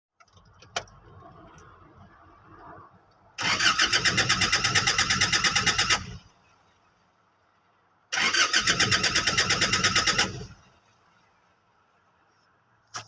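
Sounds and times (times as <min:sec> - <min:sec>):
starter cranking engine: 0:03.4 - 0:06.2, 0:08.2 - 0:10.6.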